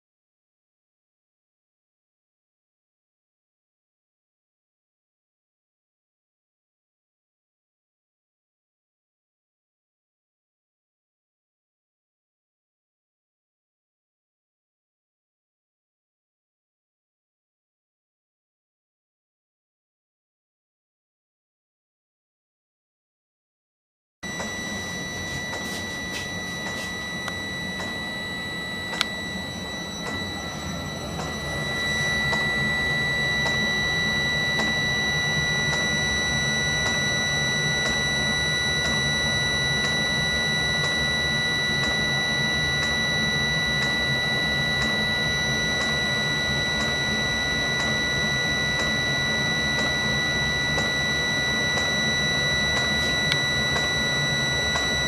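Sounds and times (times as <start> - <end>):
heater blower whine: 24.2 - 55.0.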